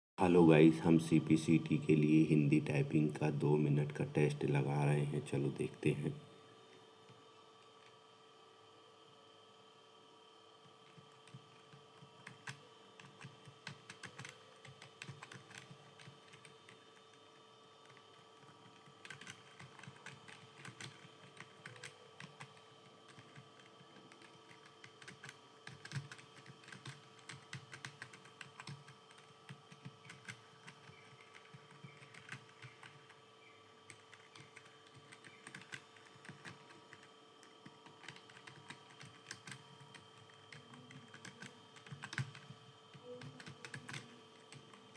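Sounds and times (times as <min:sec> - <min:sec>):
faint steady hum: 0:00.2 - 0:44.9
keyboard typing: 0:10.6 - 0:33.2, 0:33.8 - 0:44.9.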